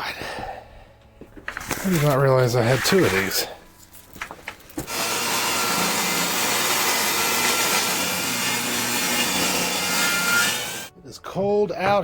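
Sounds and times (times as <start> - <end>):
electric saw cutting wood: 4.9 - 10.9.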